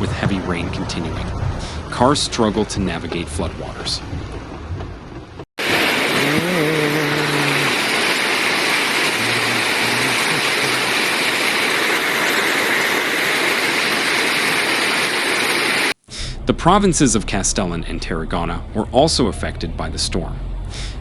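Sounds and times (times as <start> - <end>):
heavy rain and floodwater: 5.6 - 16.0.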